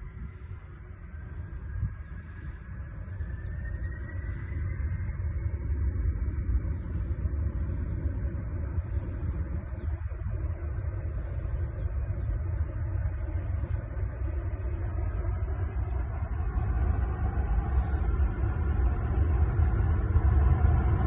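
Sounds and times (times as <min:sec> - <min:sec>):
aircraft engines rumbling: 0:00.0 - 0:21.0.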